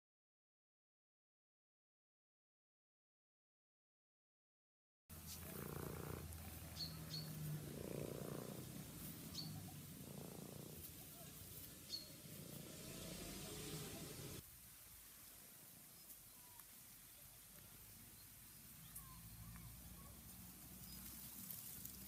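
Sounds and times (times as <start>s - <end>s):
snore-like rasping: 5.3s - 6.4s, 7.4s - 11.0s, 11.7s - 14.4s.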